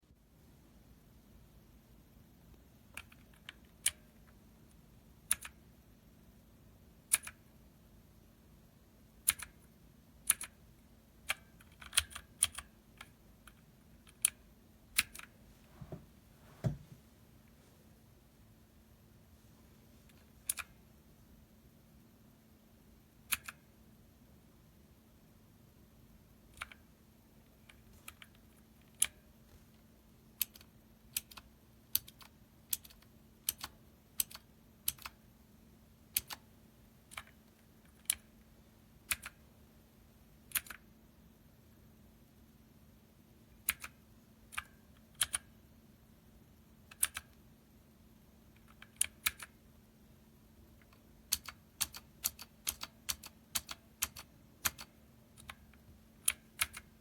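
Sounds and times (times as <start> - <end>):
clicky keyboard key presses: 5.3 - 5.6, 7.1 - 7.4, 11.2 - 14.4, 30.4 - 35.2, 48.6 - 49.6, 50.8 - 56.9.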